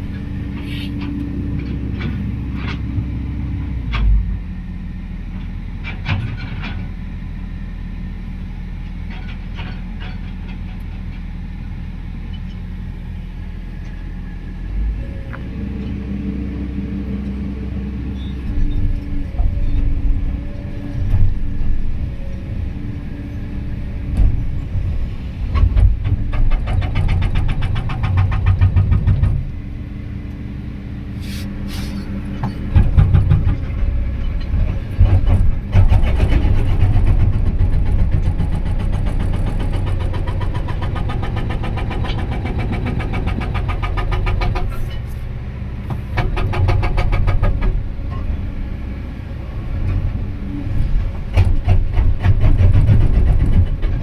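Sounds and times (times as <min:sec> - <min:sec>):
diesel engine running: 0:00.0 - 0:54.0
hydraulic breaker hammering rock: 0:25.6 - 0:29.4, 0:35.0 - 0:44.8, 0:46.0 - 0:47.8, 0:51.3 - 0:54.0.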